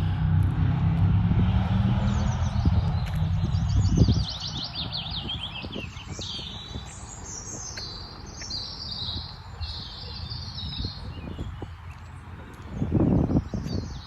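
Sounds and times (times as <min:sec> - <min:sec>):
low rumble: 0:00.0 - 0:07.4
songbirds chirping and warbling: 0:01.5 - 0:14.0.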